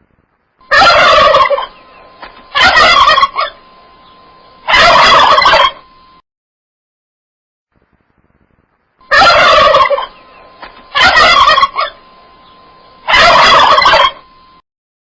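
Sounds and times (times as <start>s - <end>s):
turkey gobbling: 0.7s - 3.7s, 4.6s - 5.8s, 9.0s - 14.3s.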